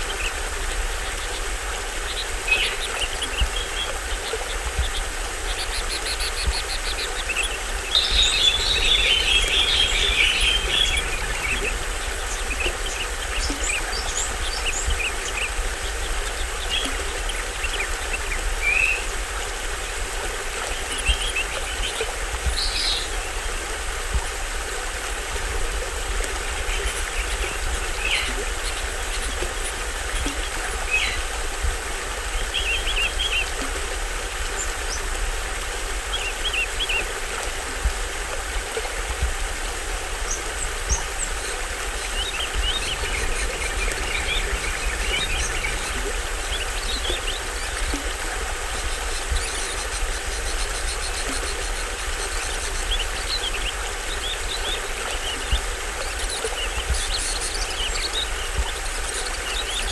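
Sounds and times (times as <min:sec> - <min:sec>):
small waterfall splashing: 0:00.0 - 0:59.9
forest birds chirping and calling: 0:02.1 - 0:18.0, 0:40.3 - 0:55.4.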